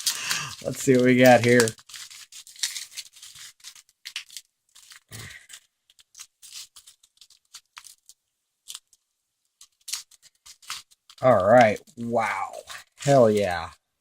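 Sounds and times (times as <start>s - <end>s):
packaging being torn open: 0.0s - 9.0s, 9.6s - 11.8s.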